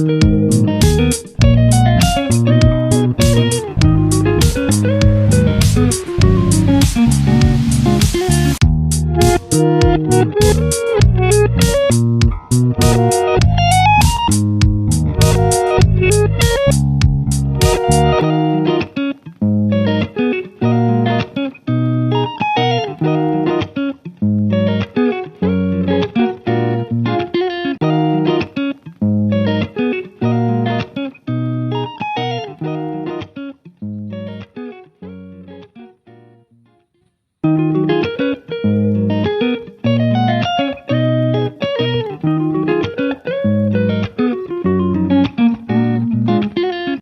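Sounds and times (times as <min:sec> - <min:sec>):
bass line: 0:00.0 - 0:18.3
sharply struck notes: 0:00.0 - 0:18.7
background music: 0:00.0 - 0:19.0
plucked guitar phrases: 0:00.0 - 0:47.0.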